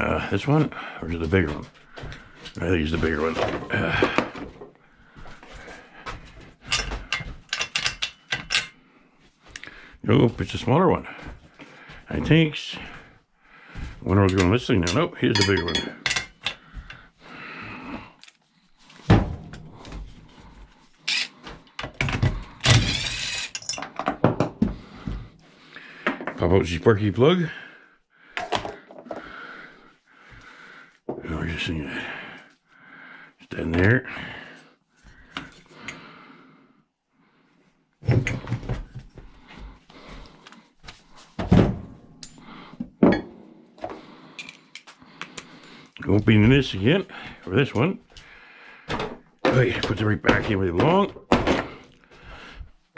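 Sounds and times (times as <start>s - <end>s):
metal tools knocking and clunking: 6.2s - 8.8s, 14.1s - 17.0s, 21.1s - 24.6s, 28.4s - 29.2s, 43.0s - 43.4s, 48.9s - 51.8s.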